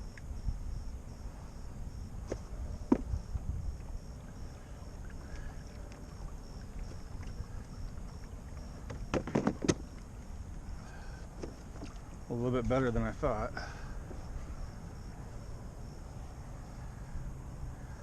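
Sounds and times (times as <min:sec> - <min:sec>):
faint pulsing insect buzz: 0:00.0 - 0:09.2, 0:12.2 - 0:18.0
low steady rumble: 0:00.0 - 0:18.0
sharp knocks in canoe: 0:02.2 - 0:03.2, 0:08.8 - 0:09.9.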